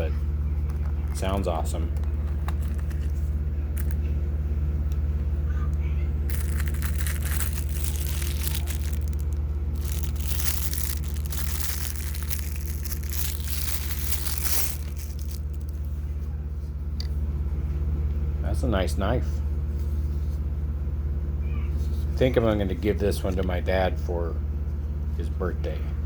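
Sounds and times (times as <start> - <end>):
packaging crinkling and crackling: 0.0 - 4.1, 6.3 - 16.0
low hum: 0.0 - 17.0.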